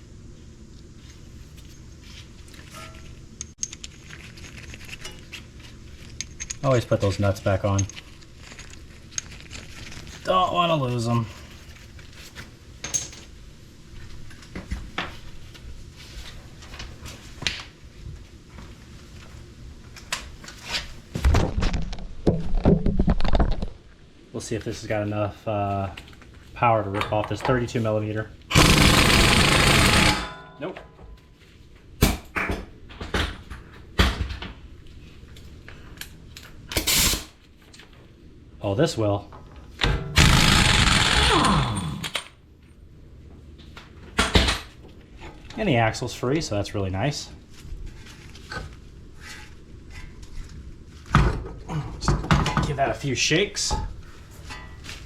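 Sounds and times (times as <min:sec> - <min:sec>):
tools rattling: 0:28.5 - 0:30.7.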